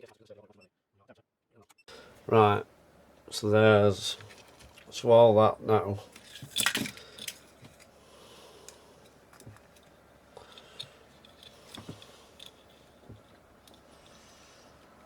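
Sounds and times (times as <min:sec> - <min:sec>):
plastic parts and tools clicking: 0:06.1 - 0:07.9, 0:08.7 - 0:15.0.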